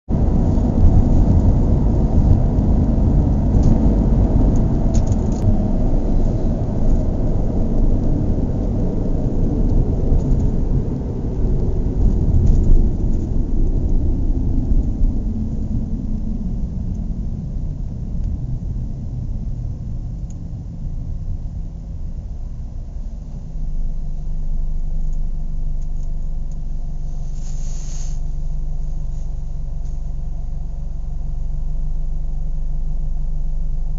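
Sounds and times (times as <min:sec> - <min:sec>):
car engine rumbling: 0:00.0 - 0:33.9
brief hiss: 0:27.0 - 0:28.4.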